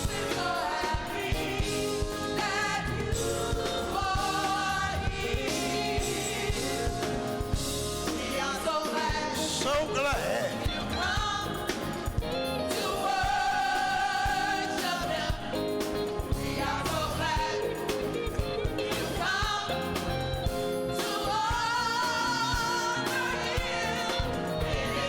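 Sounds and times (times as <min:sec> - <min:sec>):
band with drums and bass: 0:00.0 - 0:25.0
voices singing gospel: 0:00.0 - 0:25.0.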